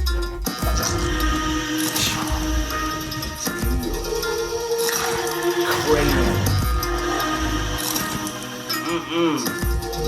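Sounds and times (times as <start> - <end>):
electronic dance music: 5.0 - 10.0.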